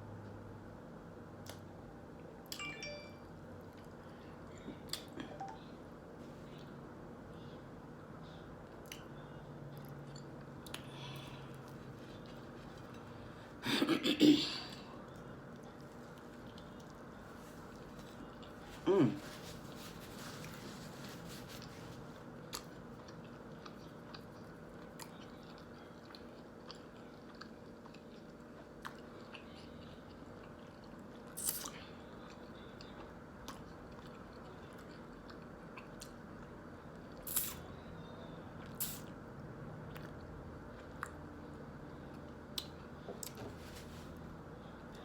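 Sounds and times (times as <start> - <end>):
person chewing: 9.7 - 13.3, 14.7 - 37.6.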